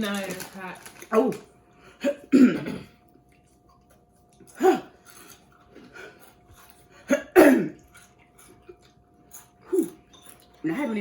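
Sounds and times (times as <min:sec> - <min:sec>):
person chewing crunchy snacks: 0:03.7 - 0:10.6.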